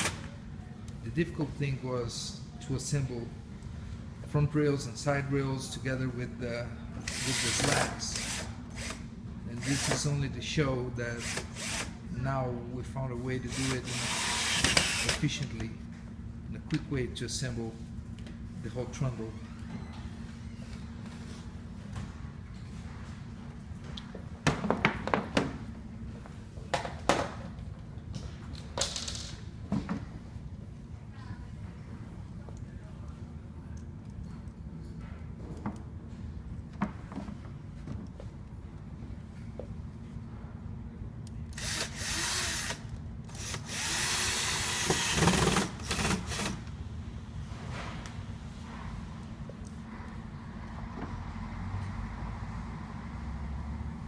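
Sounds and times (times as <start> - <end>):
power drill driving screws: 13.5 - 15.2, 41.6 - 46.6.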